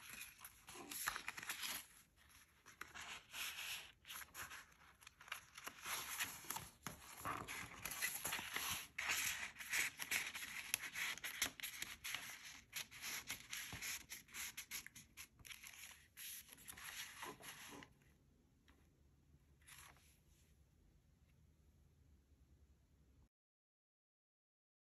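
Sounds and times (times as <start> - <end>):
paper rustling and crinkling: 0.0 - 17.9.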